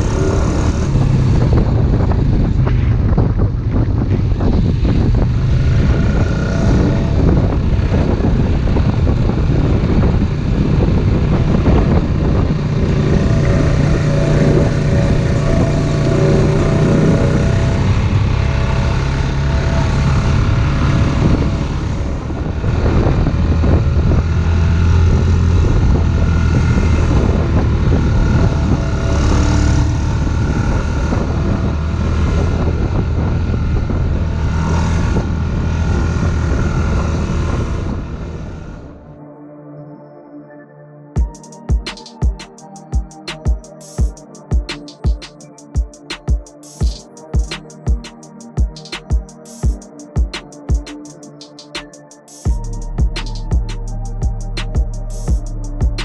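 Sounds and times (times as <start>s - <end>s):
off-road vehicle engine running: 0.0s - 39.1s, 52.5s - 56.0s
wind rumbling on microphone: 0.0s - 39.2s.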